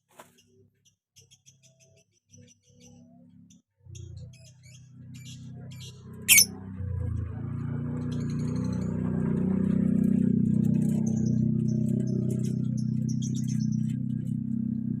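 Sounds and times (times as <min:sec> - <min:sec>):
bird chirping: 0:05.9 - 0:06.5
bird shrill call: 0:06.3 - 0:06.5.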